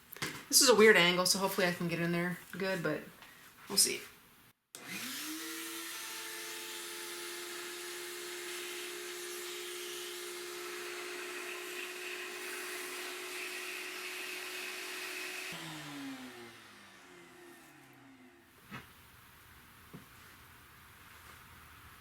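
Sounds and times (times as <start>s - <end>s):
shop vac motor whine: 4.8s - 18.6s.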